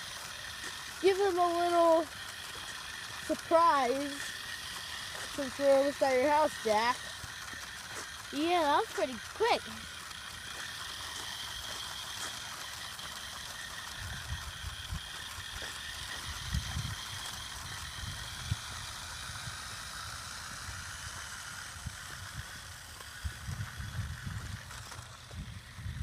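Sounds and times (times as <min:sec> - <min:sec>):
rattle: 0:00.0 - 0:26.0
toy car electric motor whining: 0:00.0 - 0:26.0.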